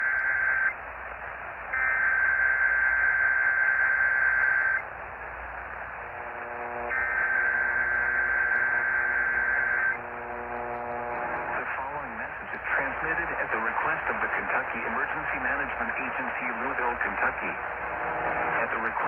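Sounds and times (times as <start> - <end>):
steady radio static: 0.0 - 19.0
digital data bursts over radio: 1.7 - 4.9, 6.0 - 19.0.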